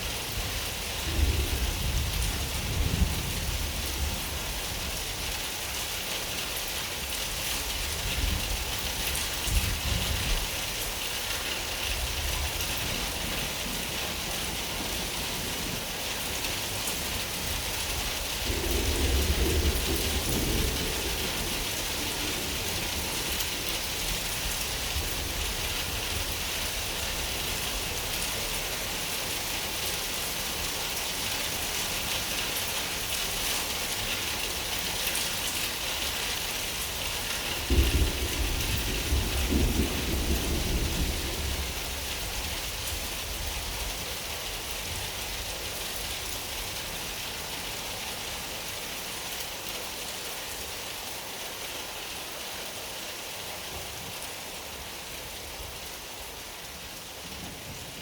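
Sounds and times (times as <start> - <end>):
steady rain falling: 0.0 - 58.0
thunder clap rumbling: 18.4 - 24.1, 37.5 - 42.5.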